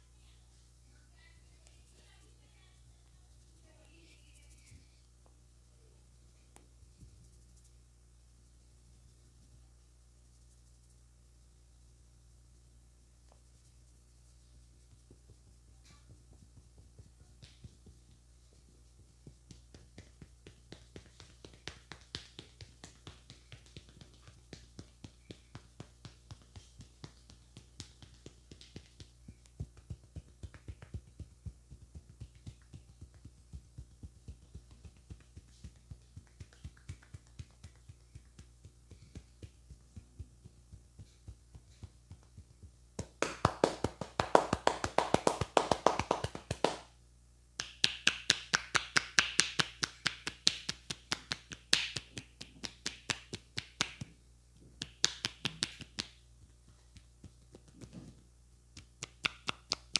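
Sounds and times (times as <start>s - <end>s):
hands tapping on head: 14.8s - 46.9s, 47.6s - 59.9s.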